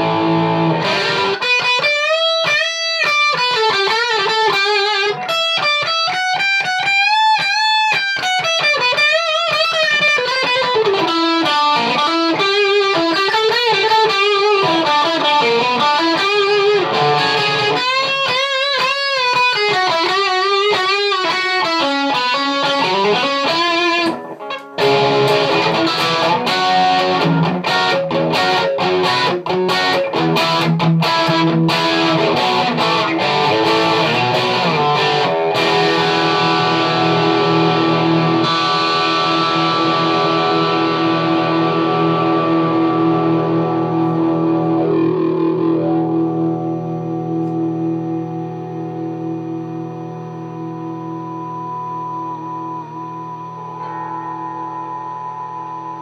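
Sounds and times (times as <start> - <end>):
electric guitar through amp: 0.0 - 56.0.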